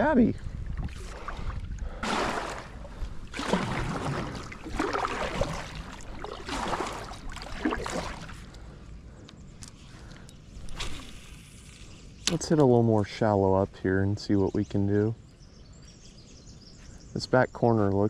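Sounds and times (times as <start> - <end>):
paddle splashing in water: 0.8 - 8.4.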